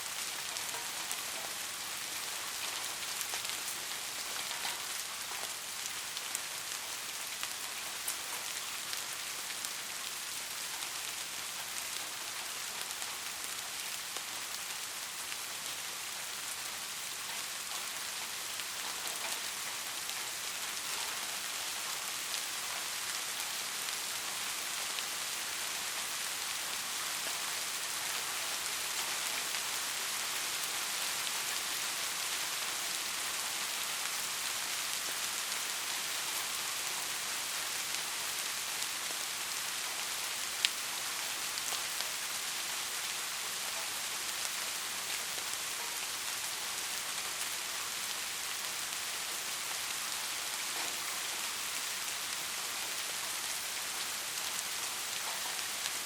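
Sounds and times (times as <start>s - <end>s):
soft rain patter: 0.0s - 56.0s.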